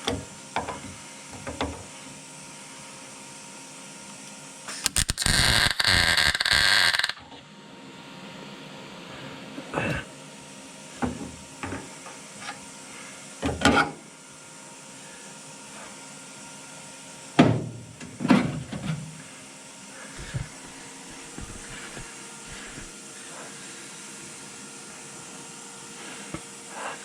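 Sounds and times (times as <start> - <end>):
faint steady hum: 14.0 - 27.0.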